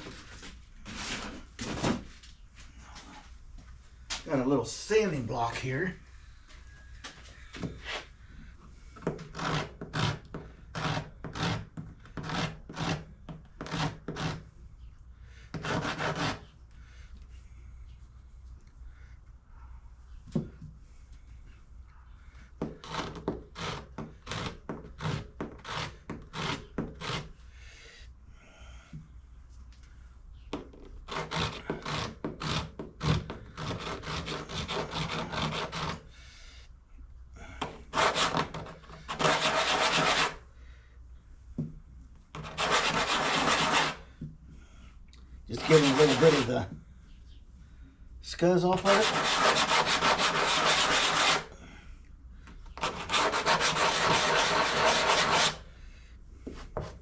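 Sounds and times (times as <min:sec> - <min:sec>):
sandpaper rubbing on metal: 0:39.1 - 0:40.4, 0:42.4 - 0:44.0, 0:45.5 - 0:46.6, 0:48.8 - 0:51.5, 0:52.8 - 0:55.6.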